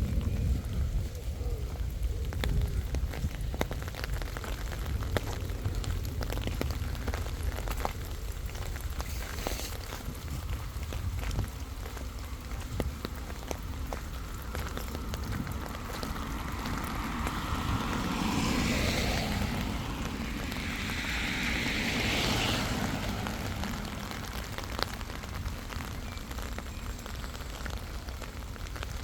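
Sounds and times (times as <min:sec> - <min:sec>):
jet aircraft roar overhead: 0:14.9 - 0:25.4.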